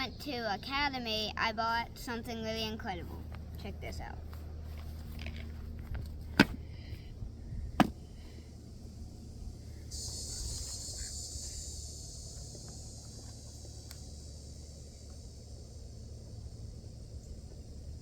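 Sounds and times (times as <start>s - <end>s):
high insect buzz: 8.8s - 18.0s.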